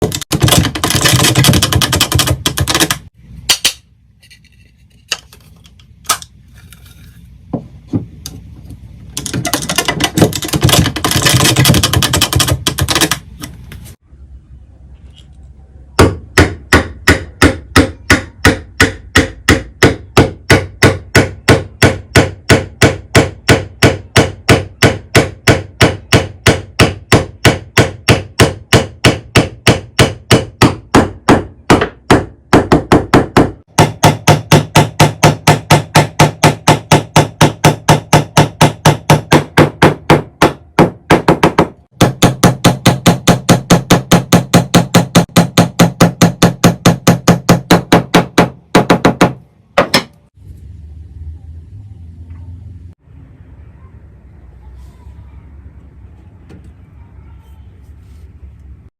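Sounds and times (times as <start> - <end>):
hammer knocking on wood: 16.0 - 50.1.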